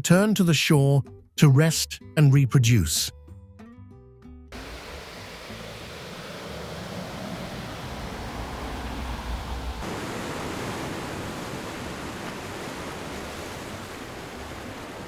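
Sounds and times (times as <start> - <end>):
sea surf rushing: 4.6 - 15.0.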